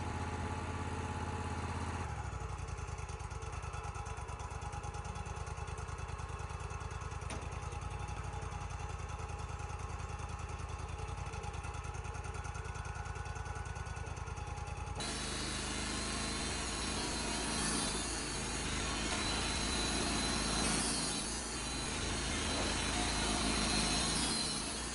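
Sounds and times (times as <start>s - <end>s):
sawmill engine idling: 0.0s - 24.9s
band saw blade running: 15.0s - 24.9s.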